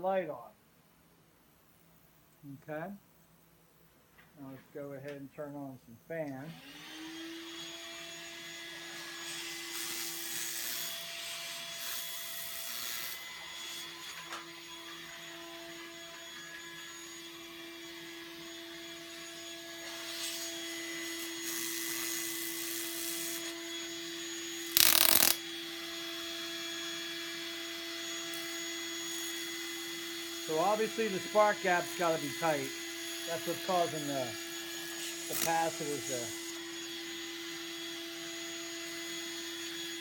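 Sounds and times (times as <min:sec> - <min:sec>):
electric fan motor humming: 0:24.7 - 0:25.4
spark gap crackling: 0:24.7 - 0:25.4, 0:35.0 - 0:36.2.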